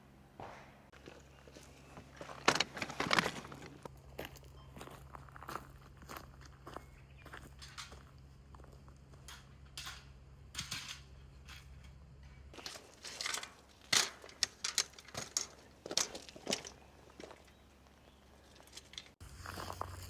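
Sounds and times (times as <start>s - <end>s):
clicks of objects being handled: 9.2s - 17.6s, 18.5s - 19.2s.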